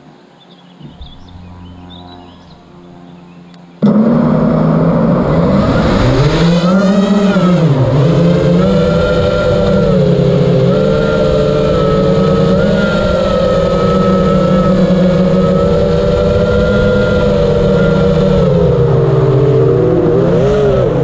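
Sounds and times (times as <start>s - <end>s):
quadcopter propellers buzzing: 0.6s - 21.0s.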